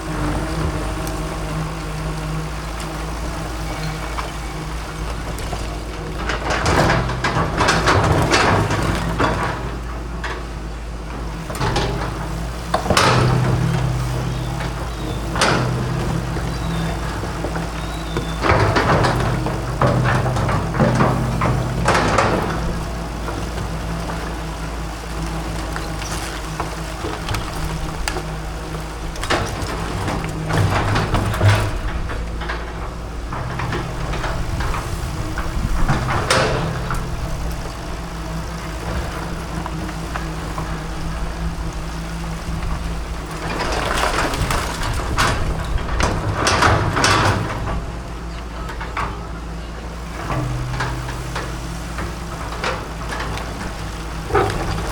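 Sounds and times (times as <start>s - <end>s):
excavator diesel engine running: 0.0s - 54.9s
excavator scraping and crunching: 0.0s - 54.9s.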